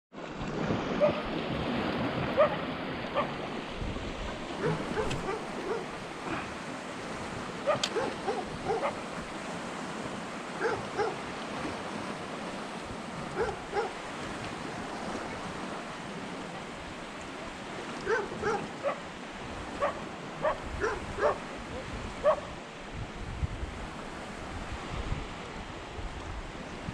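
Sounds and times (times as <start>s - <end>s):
surf: 0.1s - 26.9s
high yelping animal calls: 4.6s - 6.0s, 7.6s - 9.0s, 13.4s - 14.0s.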